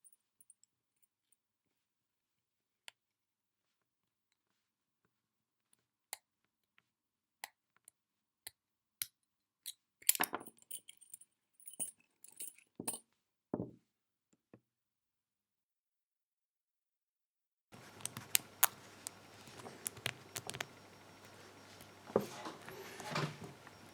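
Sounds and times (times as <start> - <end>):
lock picks clicking: 17.8 - 20.7.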